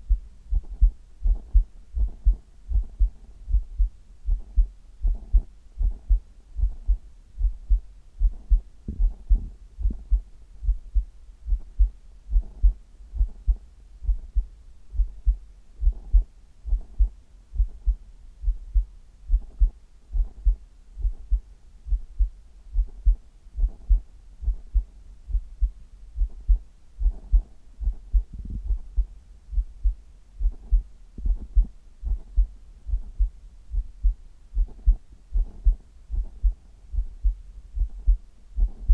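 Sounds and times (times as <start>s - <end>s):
heartbeat thumps: 0.0s - 38.9s.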